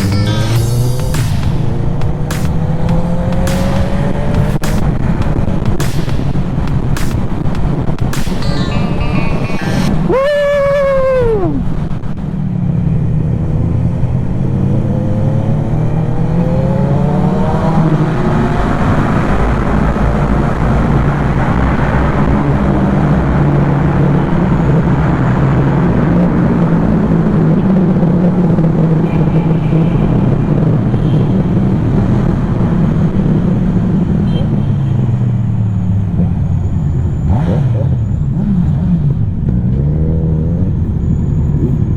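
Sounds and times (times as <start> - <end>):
motorcycle engine accelerating: 0.0 - 8.2, 35.6 - 41.9
rushing noise: 0.0 - 12.7.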